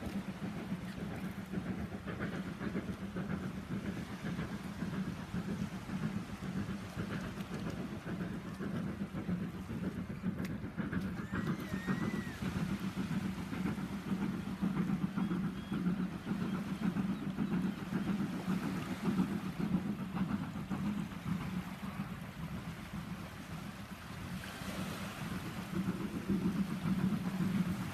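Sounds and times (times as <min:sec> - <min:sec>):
noisy wash of sea: 0:00.0 - 0:27.9
sea low rumble: 0:00.0 - 0:27.9
thin whistle: 0:11.1 - 0:12.7, 0:15.0 - 0:17.7.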